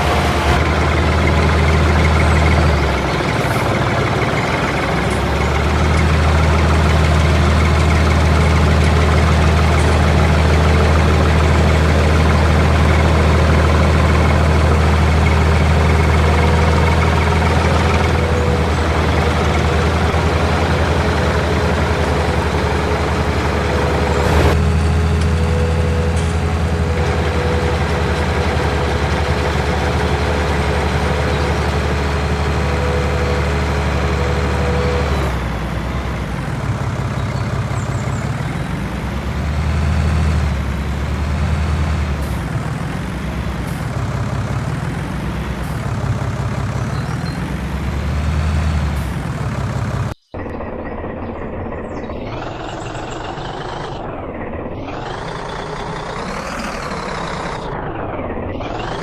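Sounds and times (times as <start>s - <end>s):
heavy diesel engine revving: 0.0s - 59.0s.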